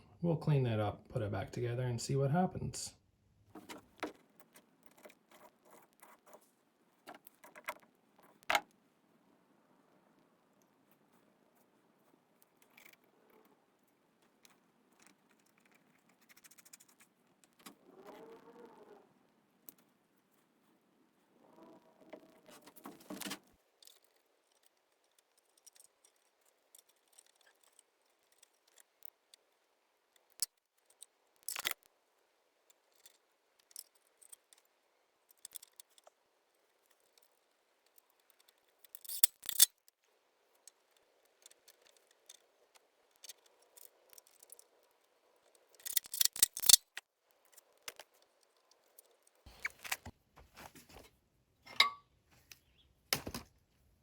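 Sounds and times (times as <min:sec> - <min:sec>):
metal parts clinking on a workbench: 0:39.0 - 0:39.7, 0:45.8 - 0:46.8, 0:51.7 - 0:52.0.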